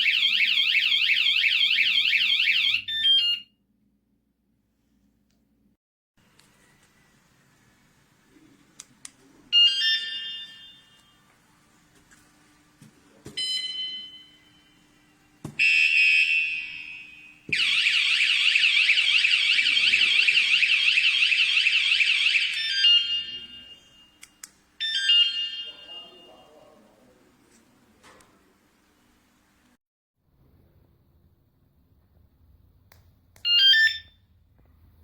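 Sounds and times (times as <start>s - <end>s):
warbling alarm siren: 0.0s - 3.4s, 15.6s - 23.9s
alarm warning beeps: 13.4s - 14.8s, 15.6s - 24.2s, 33.5s - 34.1s.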